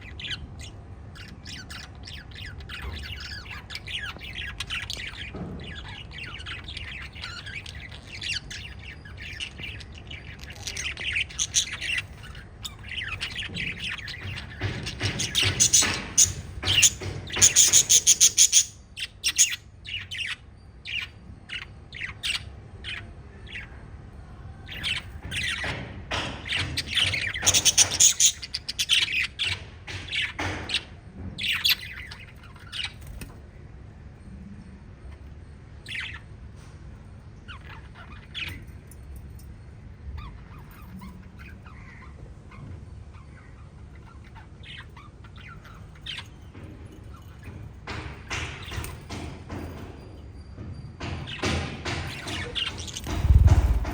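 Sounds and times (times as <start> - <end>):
lovebirds chirping: 0.0 - 50.4, 51.2 - 53.9.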